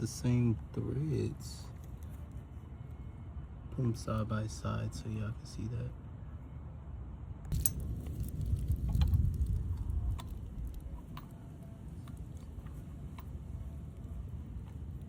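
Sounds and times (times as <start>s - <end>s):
small parts clicking and tapping: 7.5s - 11.4s
low rumble: 7.5s - 11.7s.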